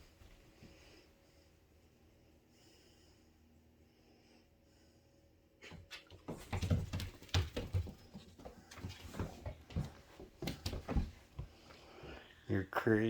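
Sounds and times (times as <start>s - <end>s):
dog scrambling and bumping: 6.0s - 11.5s.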